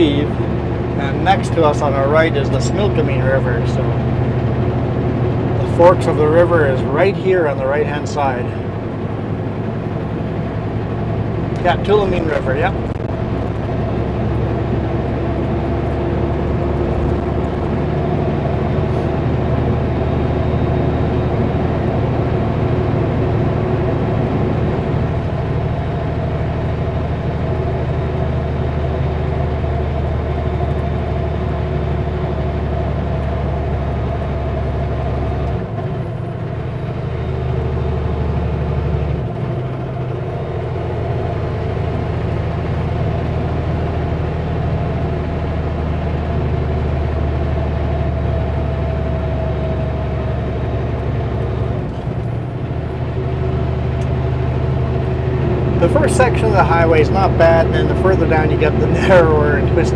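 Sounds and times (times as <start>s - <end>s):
truck engine droning: 0.0s - 59.9s.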